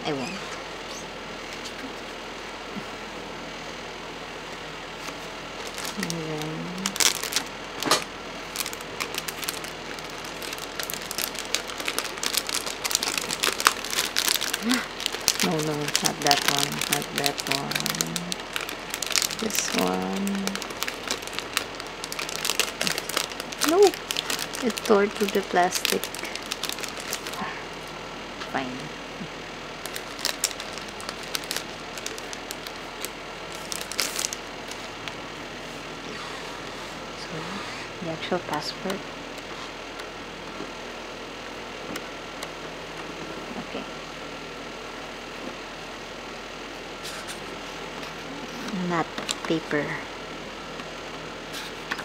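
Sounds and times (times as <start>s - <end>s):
paper and plastic packaging rustling: 5.0s - 27.9s, 29.8s - 35.2s.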